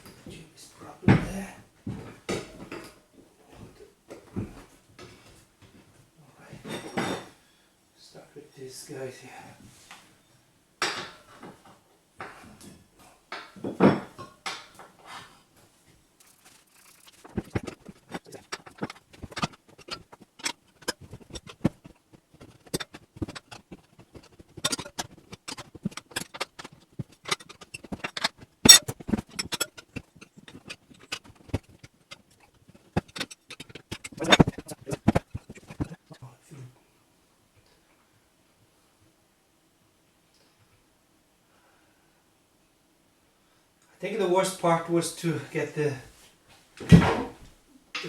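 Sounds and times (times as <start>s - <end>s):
metal hand tools clinking: 22.4s - 31.6s.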